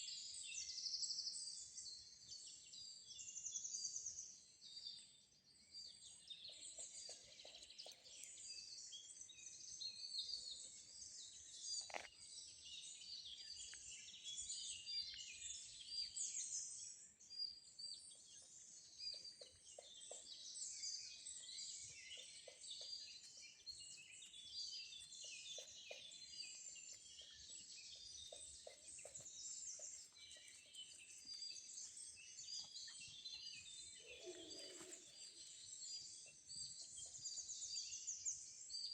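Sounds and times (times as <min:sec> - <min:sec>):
songbirds chirping and trilling: 0:00.0 - 0:38.9
lower bird calls: 0:34.0 - 0:35.6.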